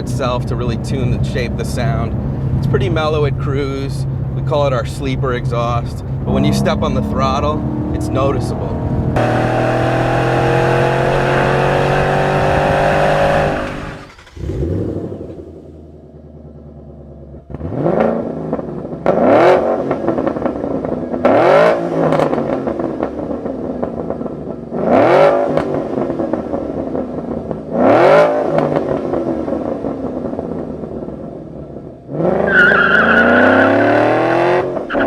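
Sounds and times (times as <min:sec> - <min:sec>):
car engine revving: 0:00.0 - 0:35.0
high steady tone: 0:06.2 - 0:11.7.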